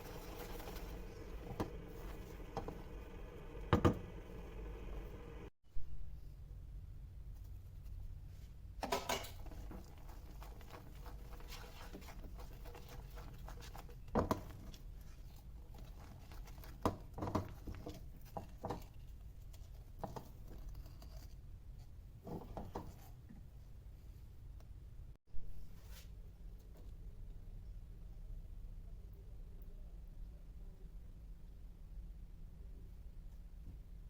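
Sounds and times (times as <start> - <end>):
low steady hum: 0.0 - 22.2
kitchen clicks and scrapes: 8.8 - 21.4.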